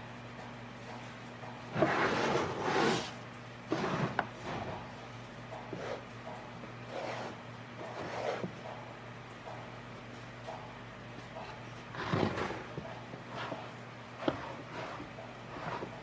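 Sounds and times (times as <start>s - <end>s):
steady low hum: 0.0s - 16.0s
wood scraping and sliding: 1.8s - 4.7s, 11.9s - 16.0s.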